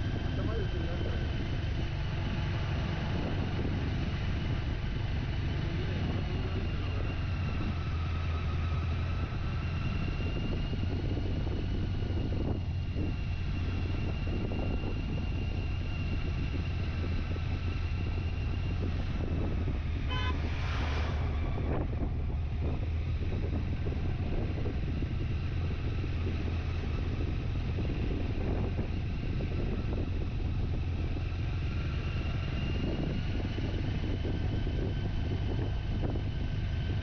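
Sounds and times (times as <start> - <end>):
vehicle engine humming: 0.0 - 37.0
short horn beeps: 20.1 - 20.4.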